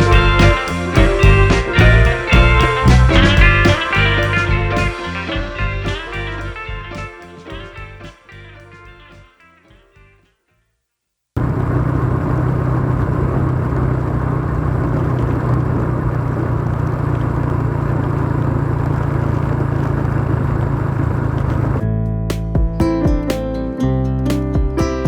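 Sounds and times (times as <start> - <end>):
car engine and tyre rumble: 11.4 - 21.8.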